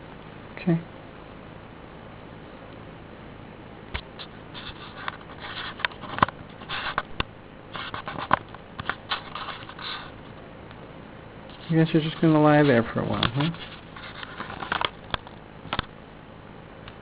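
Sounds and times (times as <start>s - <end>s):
scratching and rustling: 4.0s - 10.5s, 11.5s - 15.9s.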